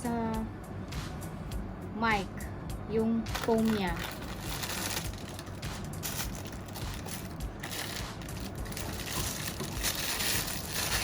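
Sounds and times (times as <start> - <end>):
packaging rustling and crinkling: 3.3 - 11.0.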